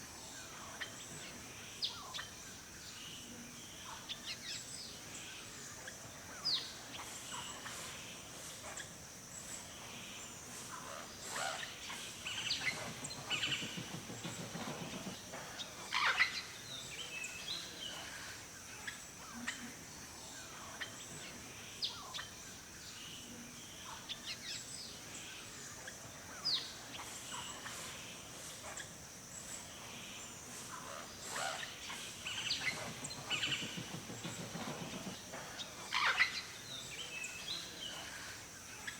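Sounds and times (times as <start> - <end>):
steady high hiss: 0.0 - 38.9
birds chirping: 26.5 - 38.9.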